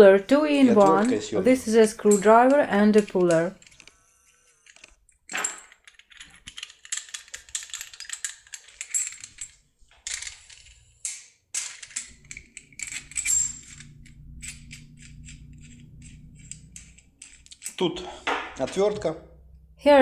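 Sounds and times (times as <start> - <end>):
small metal parts clinking: 0.4 - 19.1
low steady hum: 12.1 - 17.3.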